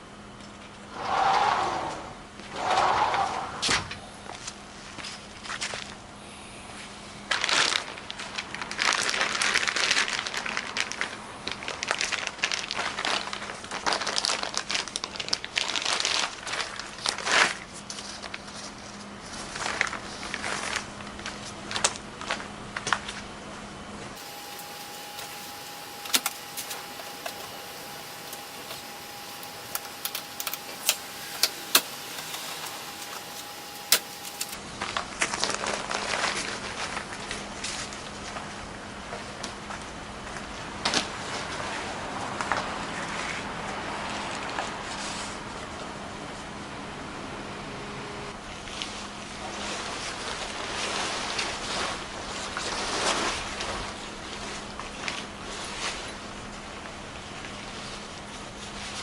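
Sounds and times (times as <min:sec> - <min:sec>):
faint steady hum: 0:00.0 - 0:59.0
car cover rustling and crinkling: 0:07.3 - 0:23.2, 0:24.2 - 0:41.7.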